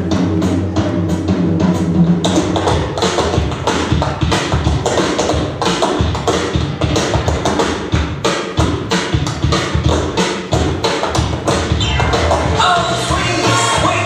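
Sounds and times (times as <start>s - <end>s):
swing music: 0.0s - 14.0s
busy low bass line: 11.7s - 14.0s.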